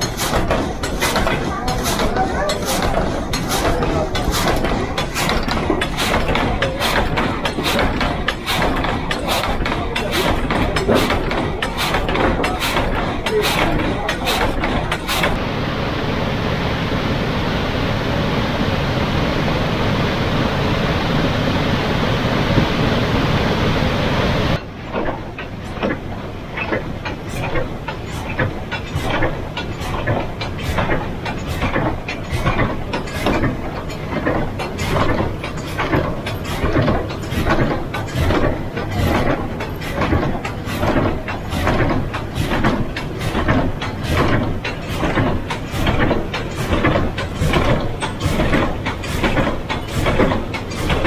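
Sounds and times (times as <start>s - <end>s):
sawmill machinery knocking: 0.0s - 51.0s
steady rushing noise: 14.0s - 24.6s.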